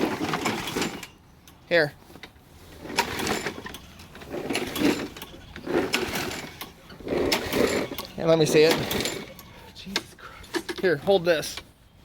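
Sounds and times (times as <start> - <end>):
lawn mower recoil cord pulled: 0.0 - 11.7
engine turning over whirring: 2.2 - 10.9.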